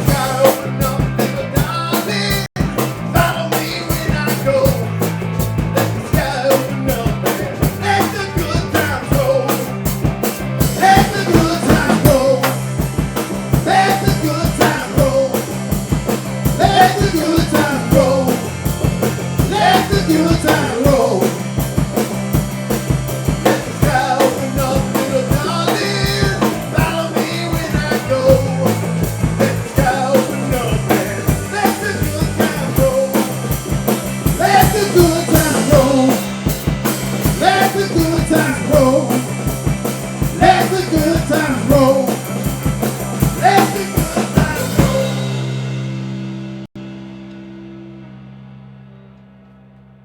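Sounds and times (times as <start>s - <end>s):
person singing: 0.0s - 5.0s, 6.0s - 9.7s, 10.7s - 12.6s, 13.5s - 15.5s, 16.5s - 18.6s, 19.4s - 21.4s, 23.4s - 33.6s, 34.2s - 36.5s, 37.2s - 39.5s, 40.3s - 45.6s
drum kit beat: 0.0s - 47.8s
rock and roll band: 0.0s - 49.1s.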